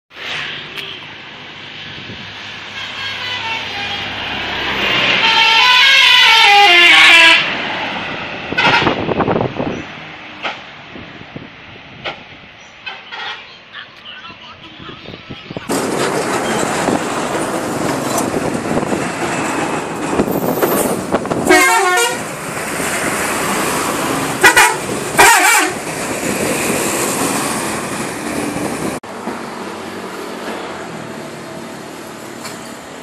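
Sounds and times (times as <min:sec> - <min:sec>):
bus engine and road noise: 0:00.1 - 0:33.0
multi-tone musical bus horn: 0:02.6 - 0:07.5, 0:08.5 - 0:09.1, 0:21.4 - 0:22.3, 0:24.4 - 0:25.8.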